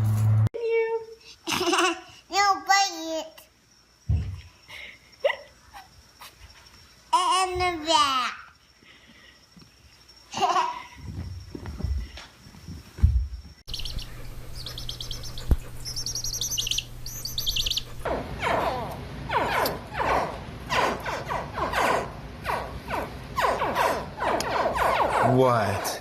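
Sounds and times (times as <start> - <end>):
birds chirping: 13.7 - 18.1.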